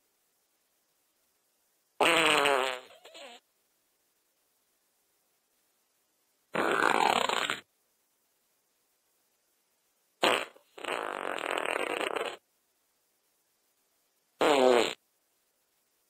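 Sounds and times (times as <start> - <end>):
fart sounds: 2.0 - 3.4, 6.5 - 7.7, 10.2 - 12.4, 14.4 - 15.0.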